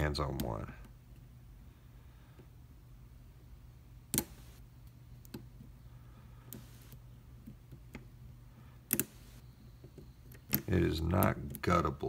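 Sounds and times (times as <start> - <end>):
low steady hum: 0.0 - 12.0
padlock metallic clicks: 8.8 - 11.6.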